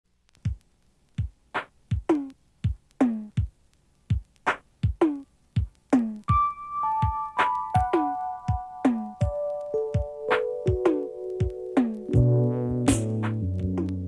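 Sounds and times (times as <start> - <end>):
sustained keyboard notes: 6.3 - 14.0
deep kick drums: 10.7 - 14.0
electronic tom hits: 11.8 - 14.0.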